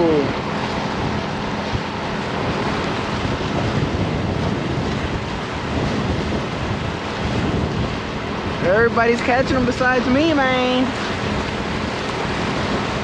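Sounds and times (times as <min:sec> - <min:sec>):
small waves at shoreline: 0:00.0 - 0:13.0
wind buffeting microphone: 0:00.0 - 0:13.0.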